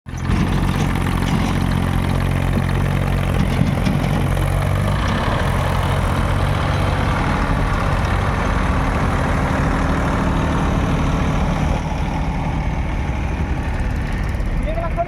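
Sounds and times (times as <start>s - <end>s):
diesel engine running: 0.1s - 15.0s.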